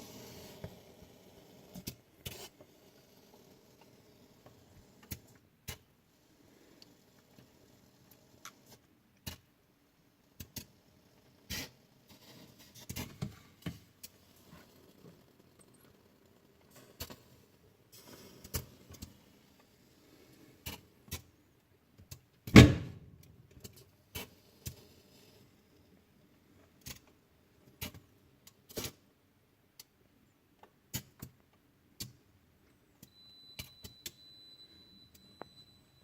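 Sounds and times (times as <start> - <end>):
faint steady high tone: 33.0 - 36.0.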